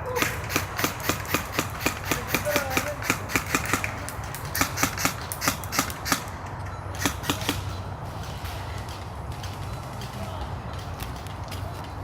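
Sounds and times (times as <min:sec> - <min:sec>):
airsoft gun shots: 0:00.1 - 0:06.3, 0:07.0 - 0:07.7.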